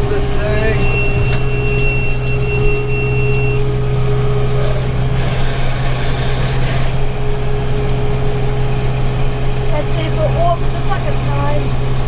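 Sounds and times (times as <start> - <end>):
tractor engine running: 0.0 - 12.0
high-pitched electronic tone: 0.4 - 3.6.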